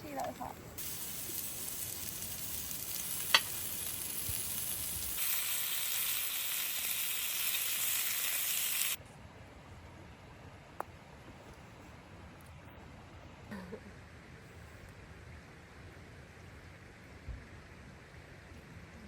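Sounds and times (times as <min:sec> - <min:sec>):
food sizzling in a pan: 0:00.8 - 0:09.0.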